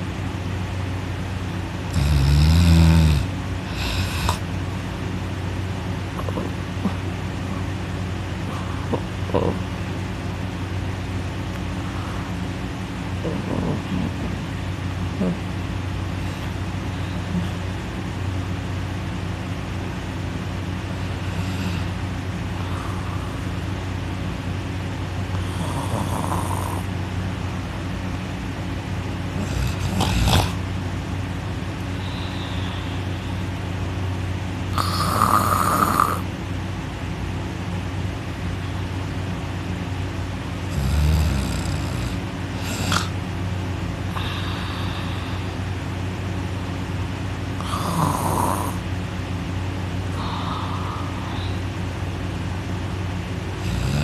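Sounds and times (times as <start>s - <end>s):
steady low hum: 0.0s - 54.0s
man snoring loudly: 1.9s - 4.4s, 21.1s - 22.0s, 25.4s - 26.9s, 29.4s - 30.6s, 34.7s - 36.3s, 40.7s - 43.1s, 47.6s - 48.8s, 53.6s - 54.0s.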